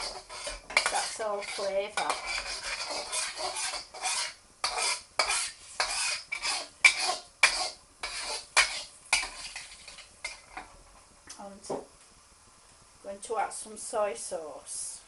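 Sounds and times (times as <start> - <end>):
utensil scraping a wok: 0.0 - 10.7.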